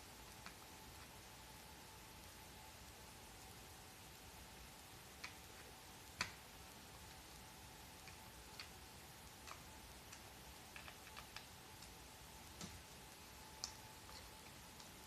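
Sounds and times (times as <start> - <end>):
faint steady hum: 0.0 - 15.0
small clicks and taps: 0.3 - 1.2, 5.2 - 6.4, 7.0 - 15.0.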